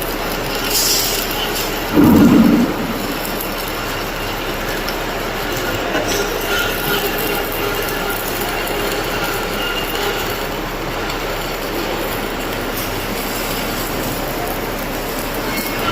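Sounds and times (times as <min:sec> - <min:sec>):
low hum: 0:01.9 - 0:03.8.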